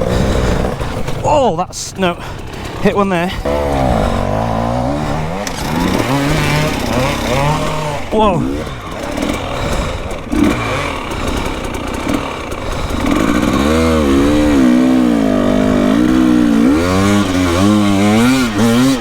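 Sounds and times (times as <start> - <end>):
dirt bike engine revving: 0.0 - 19.0.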